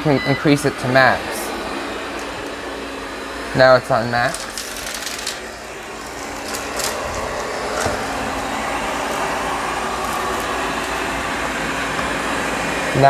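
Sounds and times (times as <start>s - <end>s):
robot vacuum whirring: 0.0s - 13.0s.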